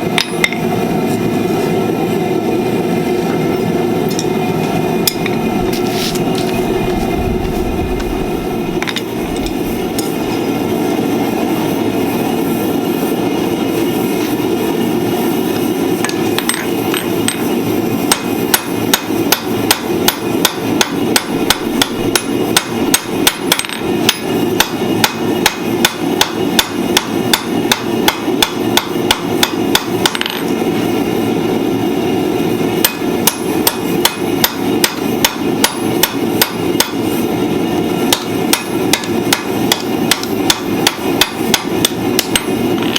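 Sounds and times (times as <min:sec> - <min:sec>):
hammer striking iron on anvil: 0:00.0 - 0:00.7, 0:04.1 - 0:05.5, 0:18.1 - 0:30.5, 0:32.8 - 0:37.1, 0:38.1 - 0:42.9
steady rushing noise: 0:04.4 - 0:12.7.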